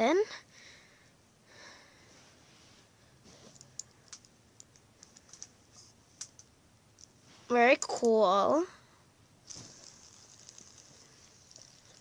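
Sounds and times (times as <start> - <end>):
soft hiss: 0.5 - 12.0
fidget spinner clicks: 9.5 - 12.0.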